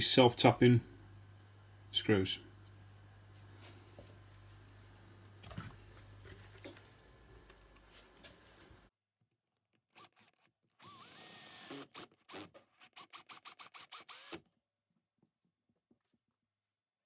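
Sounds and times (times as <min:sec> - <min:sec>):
power drill driving screws: 0:10.0 - 0:14.5.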